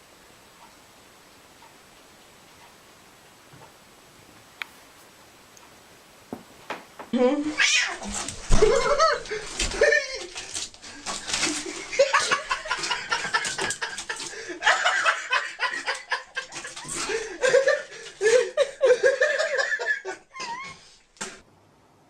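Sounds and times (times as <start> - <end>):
person laughing: 8.5 - 10.5, 11.4 - 20.8.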